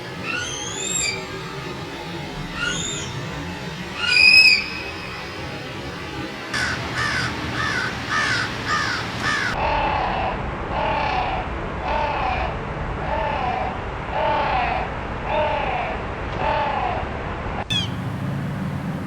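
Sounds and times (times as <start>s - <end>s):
bird calls: 0.0s - 1.6s, 2.4s - 5.4s, 6.6s - 9.6s, 17.7s - 18.2s.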